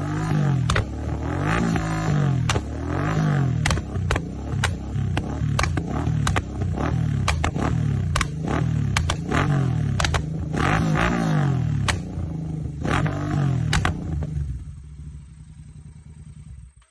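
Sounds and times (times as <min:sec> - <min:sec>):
motorcycle engine revving: 0:00.0 - 0:16.9
exhaust pops and crackles: 0:00.2 - 0:12.2, 0:13.6 - 0:14.4.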